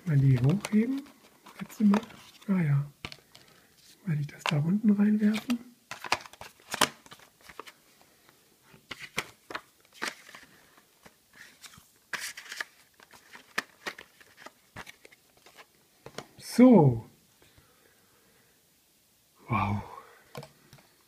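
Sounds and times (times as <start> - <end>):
cardboard and plastic packaging rustling: 0.0 - 8.1, 8.7 - 16.4.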